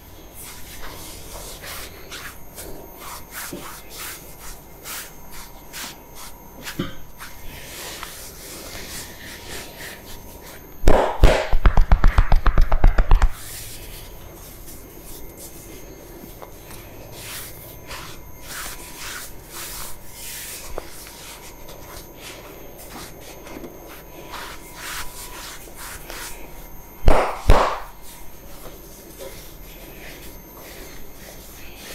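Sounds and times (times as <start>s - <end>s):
hands rubbing and tapping on head: 11.0s - 13.4s
rapid slapping strokes: 27.1s - 27.9s.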